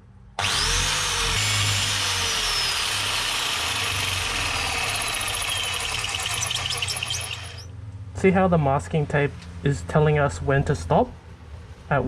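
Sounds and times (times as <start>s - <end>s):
electric drill boring into brick: 0.4s - 7.7s
rapid rattling: 0.8s - 7.7s.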